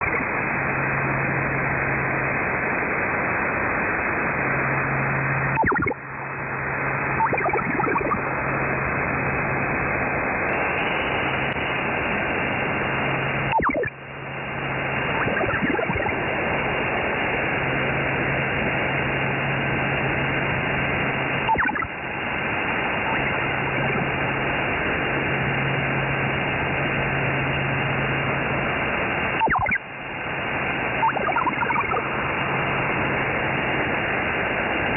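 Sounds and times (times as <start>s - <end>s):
radio static hiss: 0.0s - 34.9s
low hum: 4.4s - 9.8s, 10.5s - 19.5s, 29.2s - 34.9s
sweeping tone: 5.6s - 6.0s, 7.2s - 8.2s, 13.5s - 14.0s, 15.1s - 16.2s, 31.0s - 32.4s.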